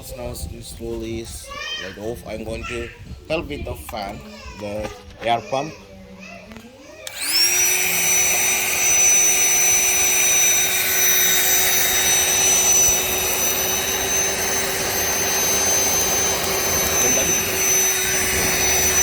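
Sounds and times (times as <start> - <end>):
electric air pump whining: 7.0 - 19.0.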